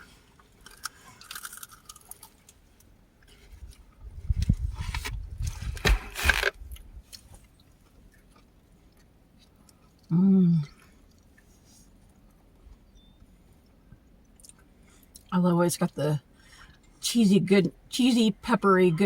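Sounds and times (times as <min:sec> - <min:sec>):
person chewing and crunching: 0:00.6 - 0:02.6, 0:06.1 - 0:10.1.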